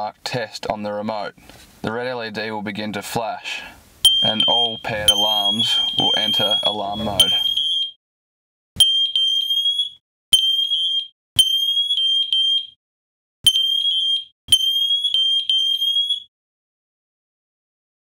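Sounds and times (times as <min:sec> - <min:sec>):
high-pitched smoke alarm tone: 0:04.0 - 0:08.0, 0:08.8 - 0:12.8, 0:13.4 - 0:16.3
alarm click: 0:04.1 - 0:07.9.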